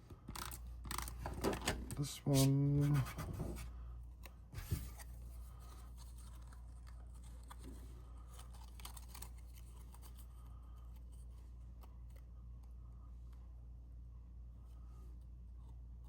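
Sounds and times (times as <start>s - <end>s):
steady low hum: 0.0s - 16.0s
paper clicks and scrapes: 0.1s - 3.6s, 4.2s - 12.2s.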